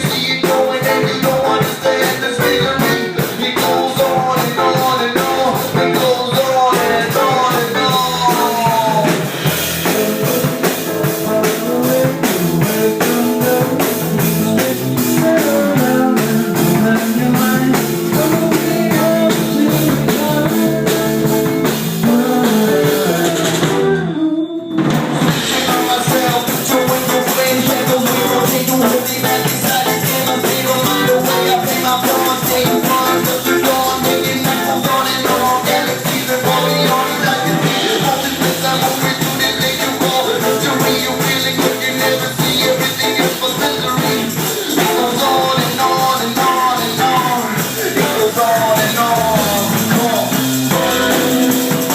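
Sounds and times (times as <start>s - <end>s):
rock band playing: 0.0s - 51.9s.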